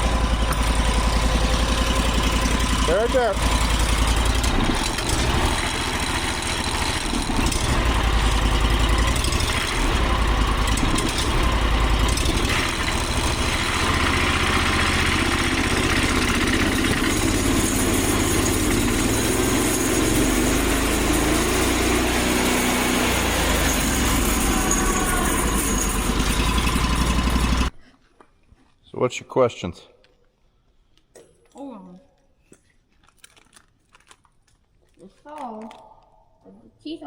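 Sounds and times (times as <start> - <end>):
small gas engine running: 0.0 - 27.7.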